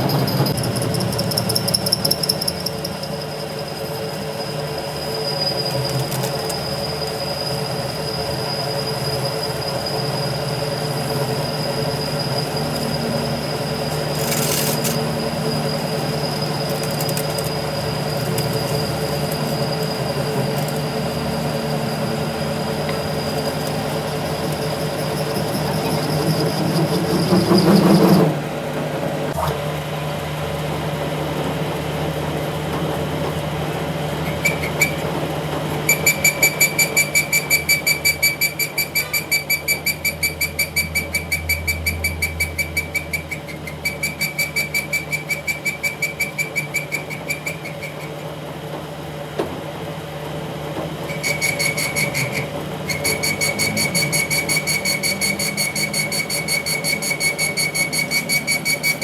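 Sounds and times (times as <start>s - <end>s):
machine tool humming: 51.1s - 59.0s.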